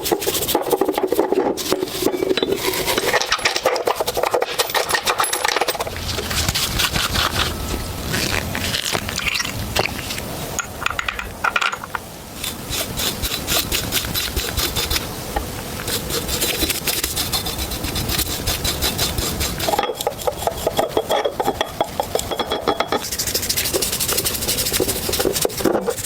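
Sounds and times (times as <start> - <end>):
file rubbing on metal: 0.0 - 5.0, 12.4 - 15.1, 15.8 - 22.4, 23.0 - 26.0.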